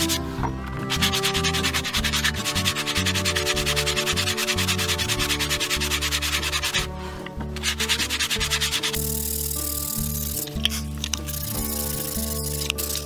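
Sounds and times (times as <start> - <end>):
sandpaper rubbing on wood: 0.0 - 0.2, 0.9 - 6.9, 7.6 - 9.5.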